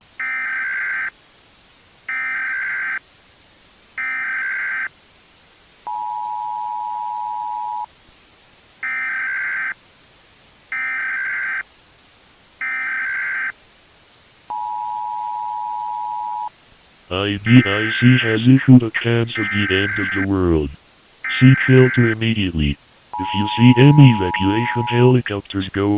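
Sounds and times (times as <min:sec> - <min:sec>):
data bursts: 0:17.1 - 0:25.9
two-tone attention signal: 0:23.2 - 0:25.2.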